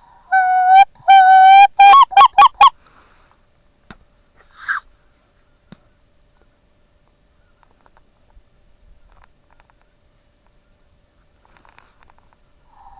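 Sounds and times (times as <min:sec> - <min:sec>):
soft rustle: 0:02.8 - 0:12.7.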